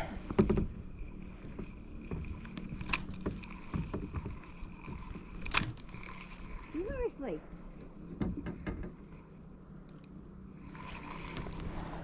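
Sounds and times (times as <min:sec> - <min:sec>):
water and rustle: 0:00.0 - 0:12.0.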